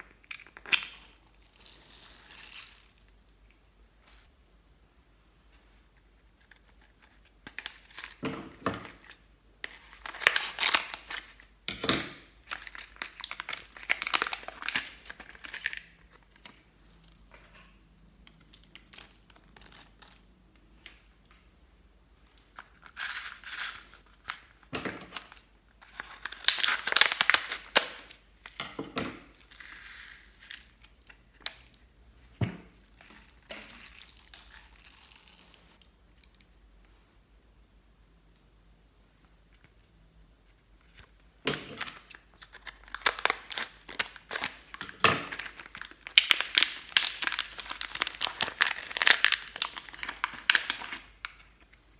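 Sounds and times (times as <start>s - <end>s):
slime crackling and popping: 26.0s - 28.1s, 42.6s - 51.4s.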